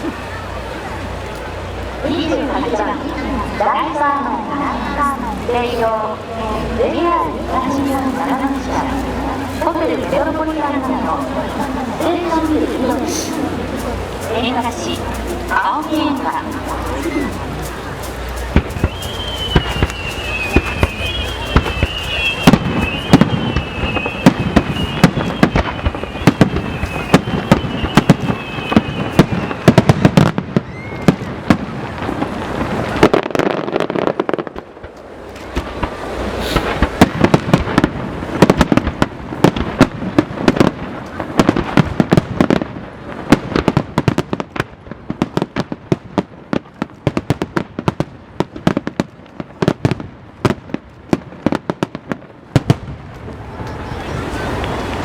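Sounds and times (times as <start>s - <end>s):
fireworks bangs and crackling: 0.0s - 55.0s
fireworks whistles falling in pitch: 18.4s - 31.5s.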